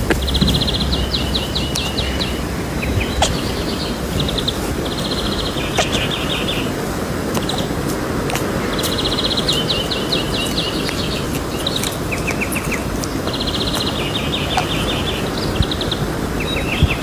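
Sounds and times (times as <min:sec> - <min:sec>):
sharp clicks: 0:00.0 - 0:02.3, 0:05.1 - 0:06.6, 0:07.3 - 0:14.9
bird chirping in rapid trills: 0:00.0 - 0:17.0.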